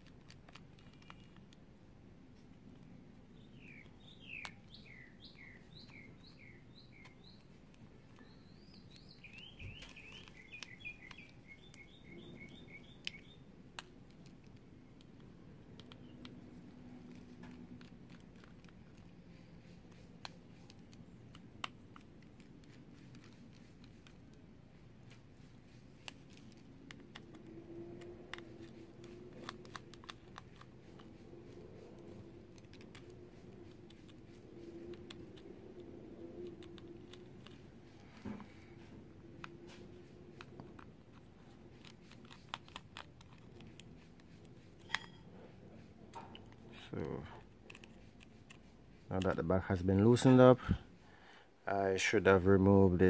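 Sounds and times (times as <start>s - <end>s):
songbird chirping: 2.7s - 13.9s.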